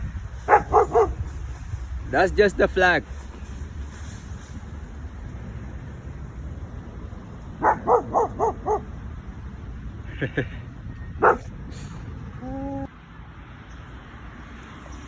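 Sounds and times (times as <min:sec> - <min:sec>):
dog barking: 0:00.5 - 0:01.3, 0:07.6 - 0:09.0, 0:11.2 - 0:11.5.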